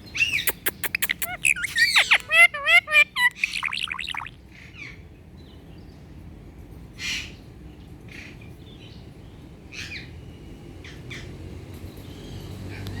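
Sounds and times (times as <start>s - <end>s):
parrot squawks and chirps: 0.2s - 4.4s.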